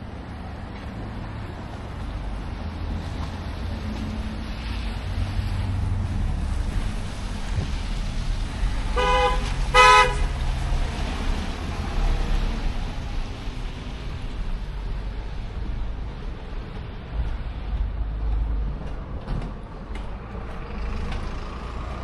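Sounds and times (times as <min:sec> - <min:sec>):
low street rumble: 0:00.0 - 0:22.0
vehicle horn beeps: 0:09.0 - 0:10.3.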